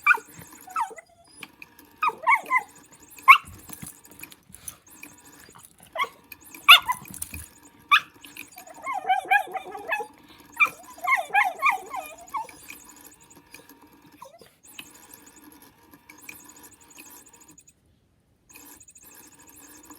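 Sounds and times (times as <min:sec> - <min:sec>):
puppy yipping: 0:00.0 - 0:03.9, 0:04.9 - 0:12.8
puppy whining: 0:00.0 - 0:13.5, 0:14.2 - 0:14.6.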